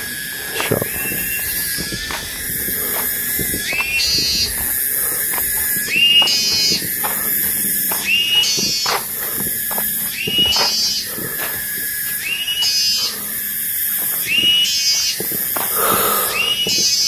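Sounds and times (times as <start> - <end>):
call climbing in pitch: 0.0 - 17.0
insects droning: 0.0 - 17.0.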